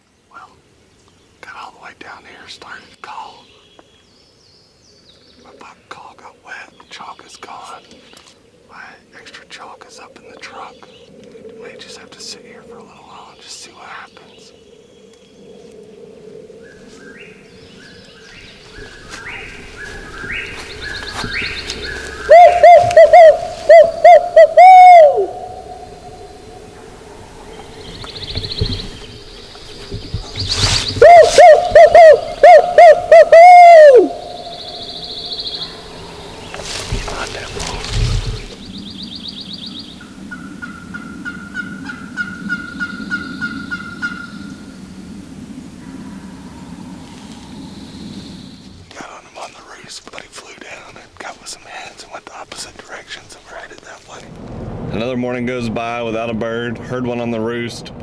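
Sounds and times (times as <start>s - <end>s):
bird song whistled notes: 17.0s - 26.5s, 27.4s - 36.6s
steady low rumble: 18.4s - 49.0s, 52.7s - 58.0s
turkey yelps: 22.3s - 25.9s, 31.0s - 34.8s.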